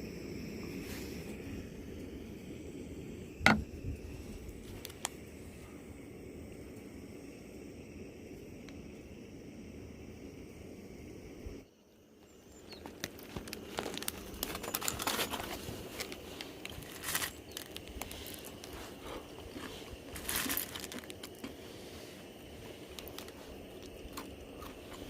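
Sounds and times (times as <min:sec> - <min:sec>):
packaging crinkling: 0:12.8 - 0:21.6, 0:22.8 - 0:25.0
irregular crackles: 0:12.8 - 0:25.0.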